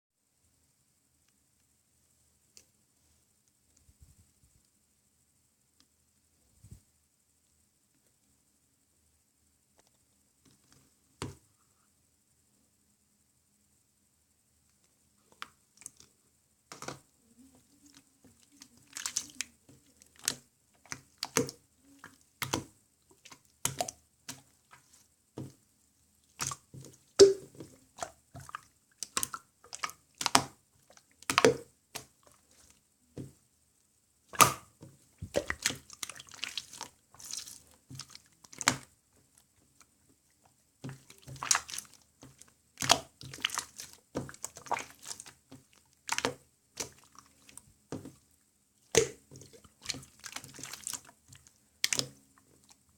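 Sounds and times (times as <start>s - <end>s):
slime squeezed by hand: 27.2s - 28.5s, 40.9s - 42.0s.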